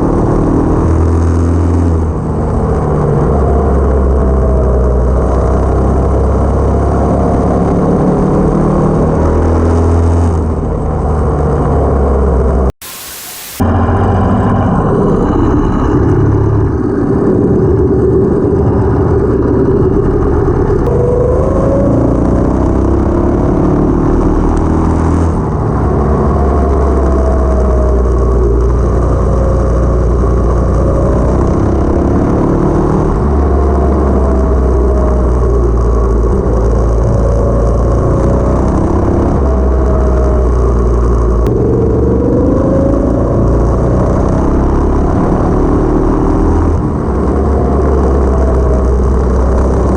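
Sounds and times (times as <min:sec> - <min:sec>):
go kart engine revving: 0:00.0 - 0:12.7, 0:17.4 - 0:49.9.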